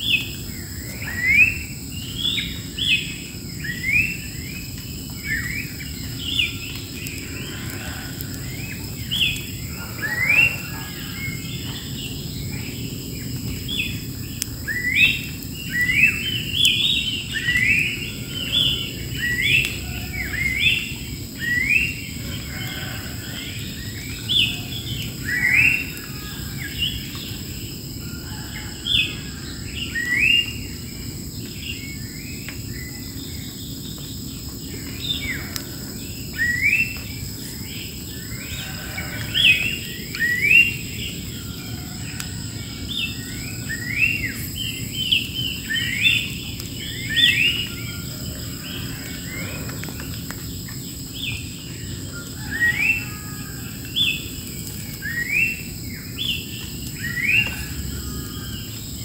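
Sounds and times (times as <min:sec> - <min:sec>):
birds calling: 0:00.0 - 0:30.7
high insect drone: 0:00.0 - 0:59.0.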